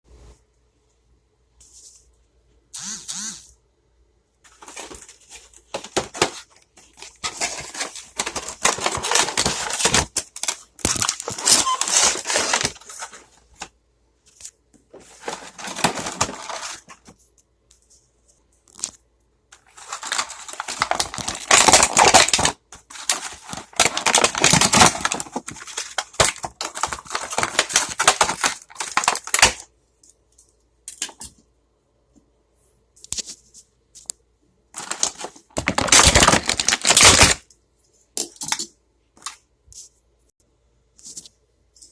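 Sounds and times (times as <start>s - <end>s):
packaging rustling and crinkling: 4.5s - 17.3s, 19.6s - 29.7s, 34.8s - 37.4s.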